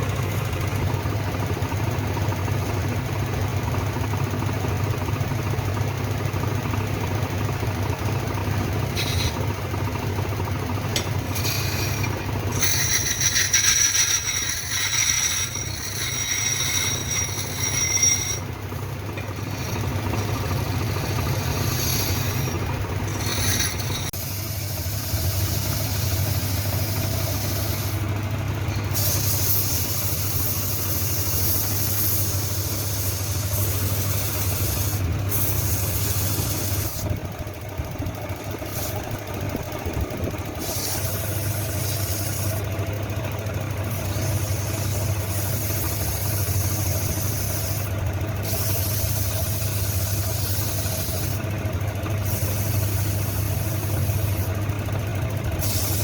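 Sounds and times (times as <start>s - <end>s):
machine humming: 8.9s - 24.3s.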